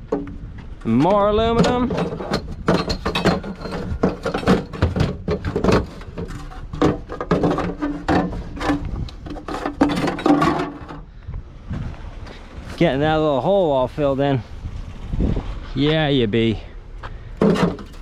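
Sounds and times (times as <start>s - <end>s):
metal scrap clanking: 1.6s - 11.0s, 17.4s - 18.0s.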